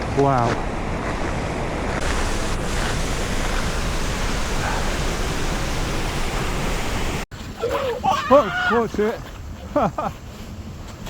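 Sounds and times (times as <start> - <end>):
waterfall roaring: 1.6 - 7.3.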